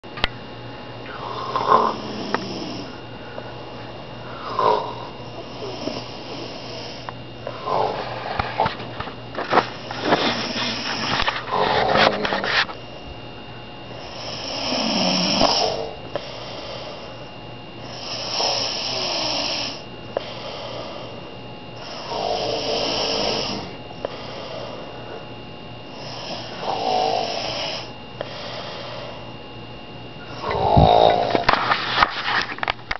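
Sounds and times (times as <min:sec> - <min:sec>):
person snoring: 0:01.1 - 0:03.0, 0:04.3 - 0:08.7, 0:09.8 - 0:12.4, 0:14.0 - 0:17.1, 0:17.8 - 0:21.2, 0:21.8 - 0:24.9, 0:25.9 - 0:29.2, 0:30.3 - 0:31.5.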